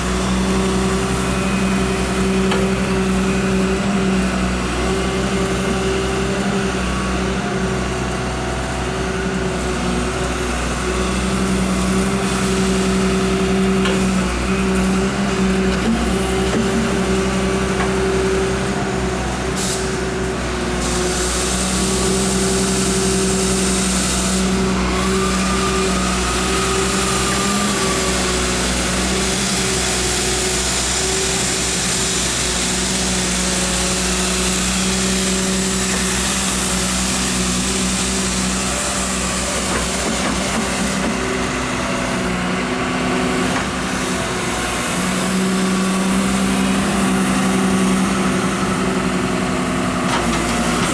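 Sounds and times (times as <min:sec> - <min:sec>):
excavator diesel engine running: 0:00.0 - 0:50.9.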